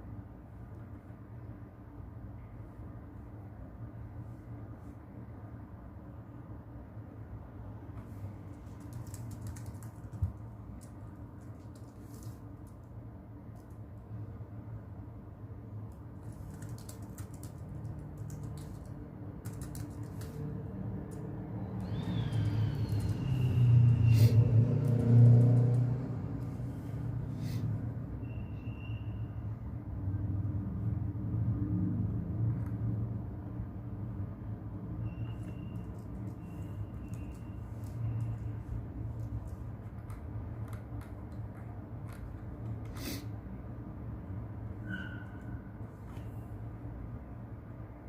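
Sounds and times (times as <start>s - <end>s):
keyboard typing: 8.5s - 13.8s, 15.9s - 24.0s, 24.7s - 26.6s, 35.3s - 43.0s
passing road vehicle rumble: 19.9s - 28.2s.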